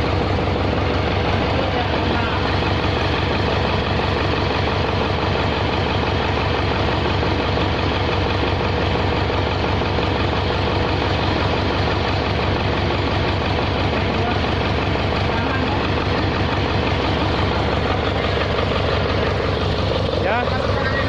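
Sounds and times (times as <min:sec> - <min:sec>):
diesel engine idling: 0:00.0 - 0:21.0.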